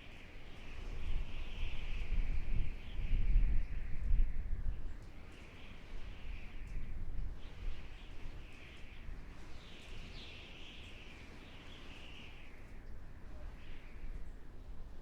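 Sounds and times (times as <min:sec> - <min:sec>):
low rumble of gusts: 0:00.0 - 0:05.2.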